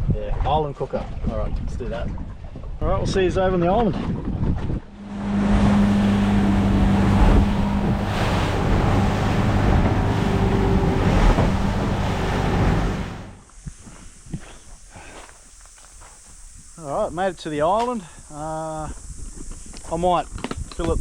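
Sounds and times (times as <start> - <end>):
wind buffeting microphone: 0.0 - 14.5, 18.8 - 21.0
water rushing past hull: 0.3 - 13.4
boat motor running: 4.4 - 13.4.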